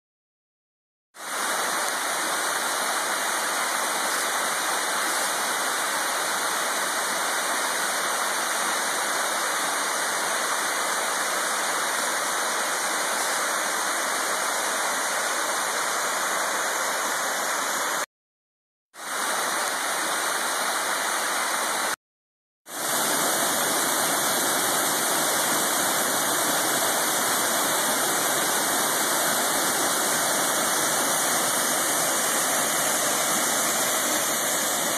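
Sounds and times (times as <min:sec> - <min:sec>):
waterfall rushing: 0:22.7 - 0:34.9.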